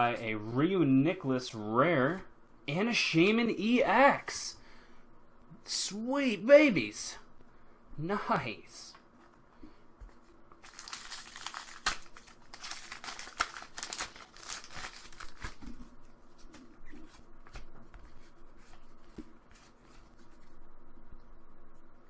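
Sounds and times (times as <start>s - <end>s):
foil wrapper crinkling and tearing: 10.6s - 15.9s
cards clicking and rustling: 10.6s - 18.1s.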